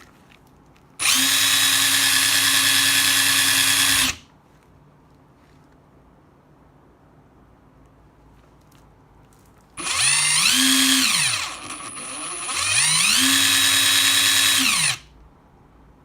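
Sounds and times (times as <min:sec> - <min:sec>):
impact driver motor whine: 0:01.0 - 0:04.2, 0:09.8 - 0:15.0.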